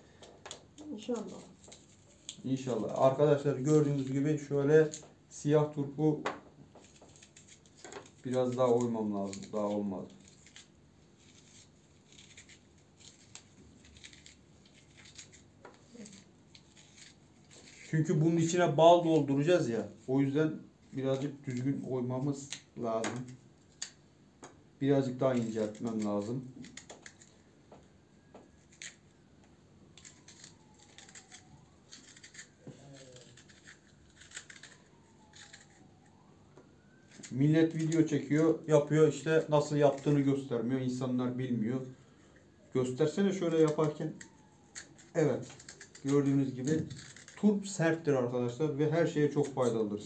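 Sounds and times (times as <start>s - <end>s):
faint scraping of radish flesh: 0.6s - 5.8s, 6.7s - 20.1s, 25.0s - 27.5s, 29.9s - 41.4s, 43.0s - 50.0s.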